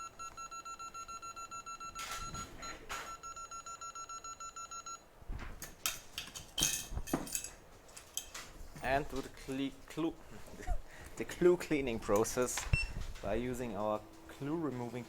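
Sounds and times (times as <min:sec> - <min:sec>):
rapid high beeps: 0:00.0 - 0:05.0.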